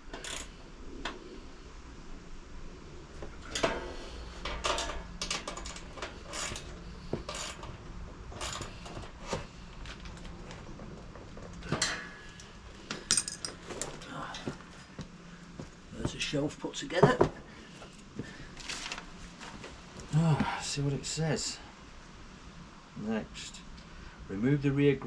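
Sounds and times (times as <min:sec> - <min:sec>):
metallic clinks of hardware and tools: 0:13.0 - 0:13.8.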